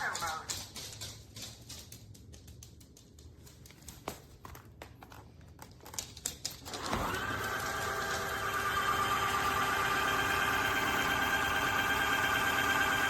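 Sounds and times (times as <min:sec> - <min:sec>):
vacuum motor whining: 0:06.7 - 0:13.0.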